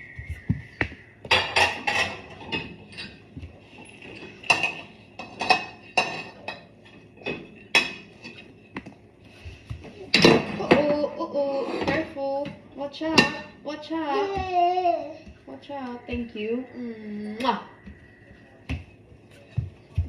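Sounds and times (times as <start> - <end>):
dishes and cutlery clinking: 1.2 - 8.9, 9.8 - 11.0.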